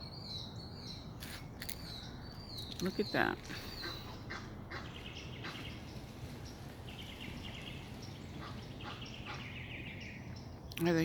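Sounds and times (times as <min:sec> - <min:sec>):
geese calling: 0:03.5 - 0:09.8.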